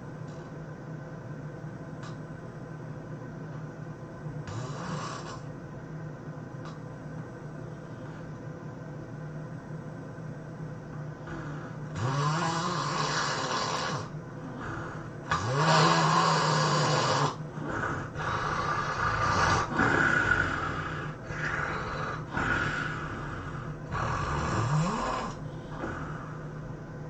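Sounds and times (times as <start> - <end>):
noisy breaths: 4.4 - 5.6, 7.6 - 8.5, 10.9 - 27.0
person snoring heavily: 4.5 - 5.5, 11.2 - 26.6.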